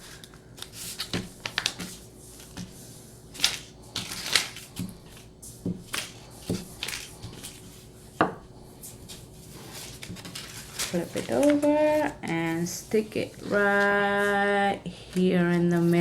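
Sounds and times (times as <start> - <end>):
paper rustling and tapping: 0.2 - 2.7, 3.4 - 7.6, 9.1 - 12.5.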